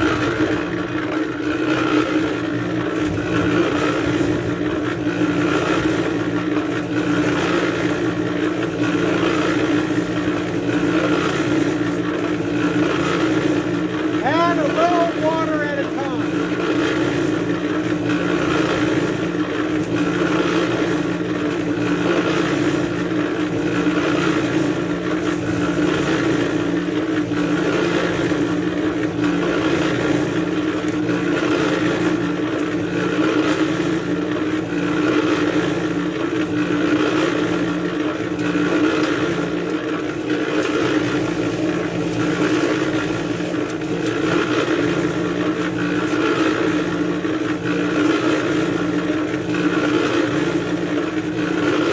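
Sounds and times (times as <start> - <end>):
cement mixer motor humming: 0.0 - 51.9.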